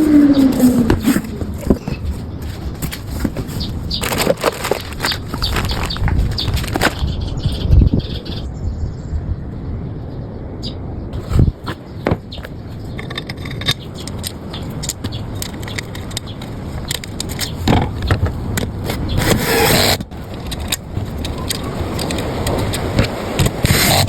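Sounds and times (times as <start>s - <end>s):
cardboard packaging handled: 0.0s - 7.2s, 13.5s - 24.0s
rustling: 0.0s - 7.2s.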